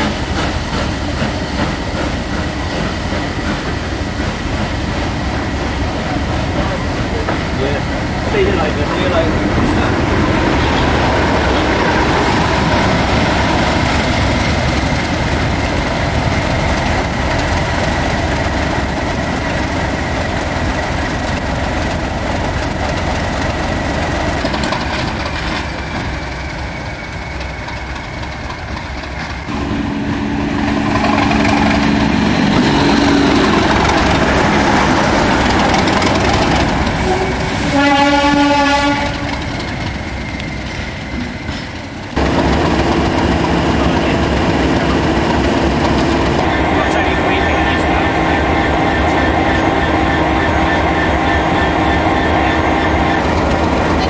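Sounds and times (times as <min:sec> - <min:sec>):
train rumbling on rails: 0:00.0 - 0:54.0
train warning horn blast: 0:29.5 - 0:33.3, 0:37.0 - 0:39.4.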